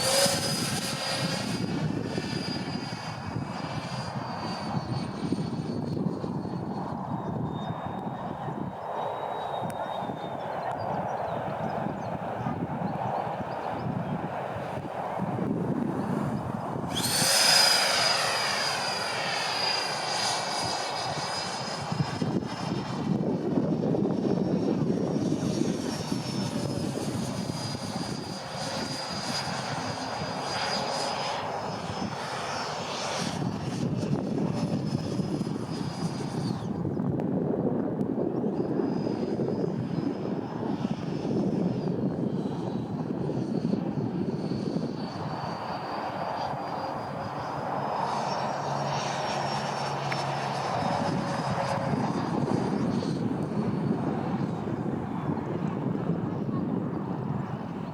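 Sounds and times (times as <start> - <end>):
electric ducted fan whine: 0.0 - 57.9
rushing air: 14.7 - 23.9.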